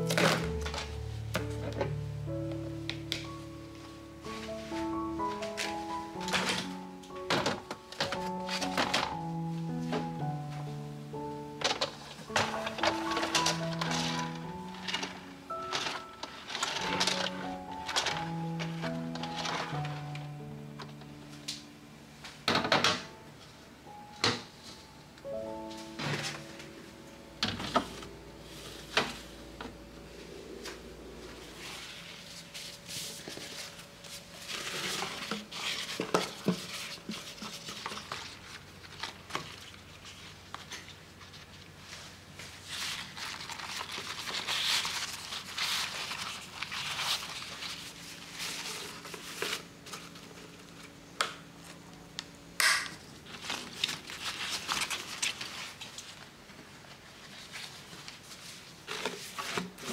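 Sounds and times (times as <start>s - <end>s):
plastic crinkling: 11.6s - 21.0s, 31.6s - 50.9s, 53.1s - 59.9s.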